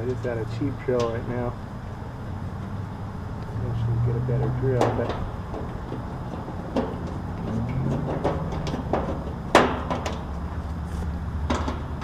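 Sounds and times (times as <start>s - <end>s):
light clicks and knocks: 0.0s - 1.3s, 4.4s - 10.8s, 11.4s - 12.0s
air conditioner units humming: 0.0s - 12.0s.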